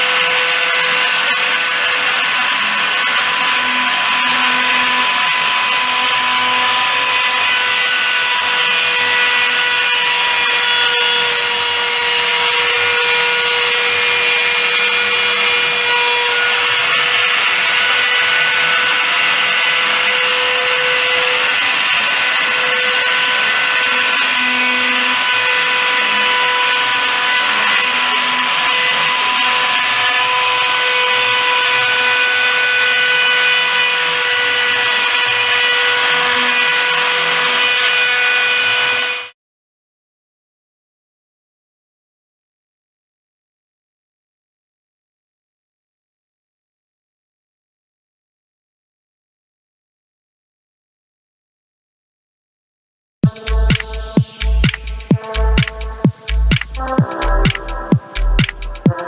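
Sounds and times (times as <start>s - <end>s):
machine motor whining: 53.2s - 58.2s
stepping tones: 53.2s - 59.0s.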